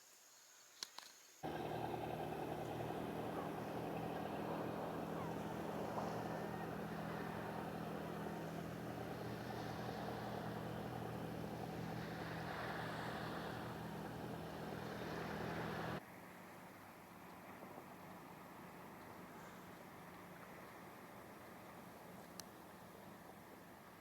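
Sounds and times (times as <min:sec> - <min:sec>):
boat engine humming: 0:01.4 - 0:16.0
water: 0:01.4 - 0:24.0.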